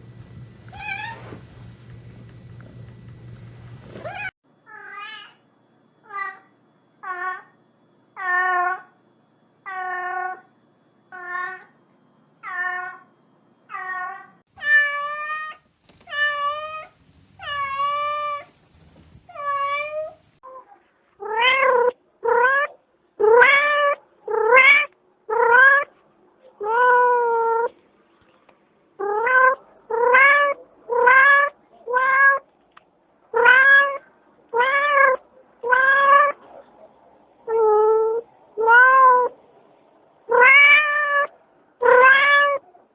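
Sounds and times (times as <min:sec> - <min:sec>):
cat meowing: 0:00.7 - 0:01.2, 0:03.9 - 0:05.4, 0:29.0 - 0:32.4, 0:33.4 - 0:36.4, 0:37.5 - 0:39.4, 0:40.3 - 0:42.6.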